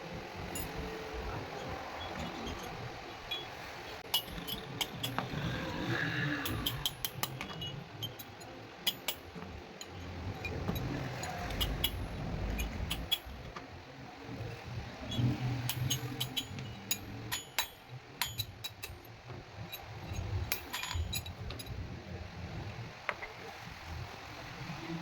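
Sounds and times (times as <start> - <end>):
metal taps and clinks: 0.5 - 0.8, 4.0 - 5.4, 6.4 - 12.0, 15.6 - 21.8.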